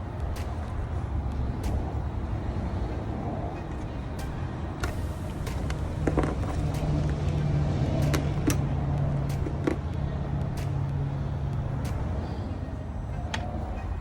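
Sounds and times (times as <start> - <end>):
vehicle motor humming: 0.0 - 14.0
sharp clicks: 4.2 - 12.2.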